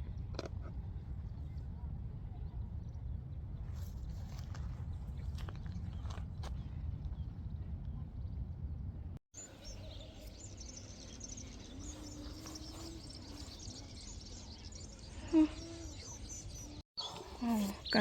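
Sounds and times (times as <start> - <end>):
wind rumble on microphone: 0.0 - 16.8
small birds chirping: 9.4 - 18.0.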